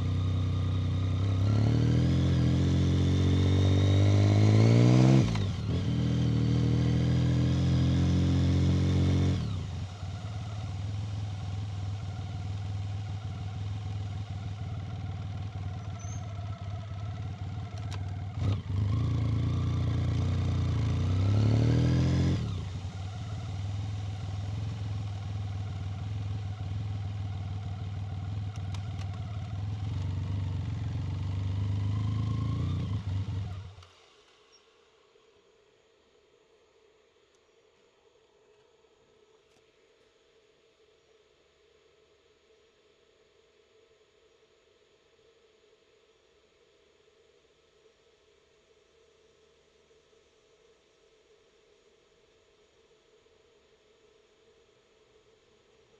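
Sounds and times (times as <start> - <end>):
motorcycle engine accelerating: 0.0 - 33.8.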